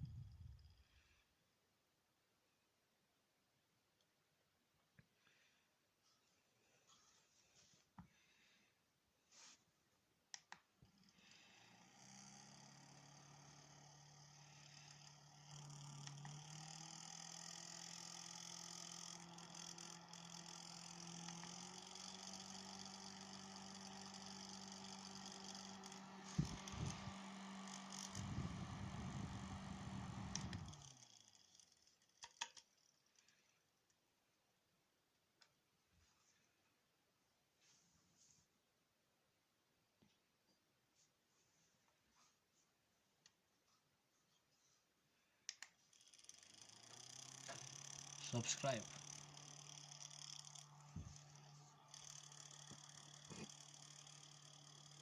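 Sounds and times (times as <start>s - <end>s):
small electric motor humming: 10.9s - 32.3s, 45.9s - 55.0s.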